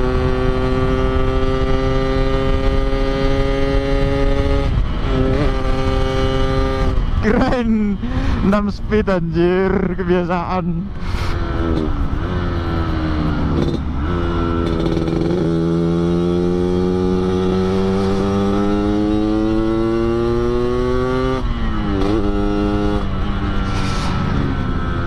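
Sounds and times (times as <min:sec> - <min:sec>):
two-stroke motorcycle accelerating: 0:00.0 - 0:08.4, 0:10.9 - 0:25.0.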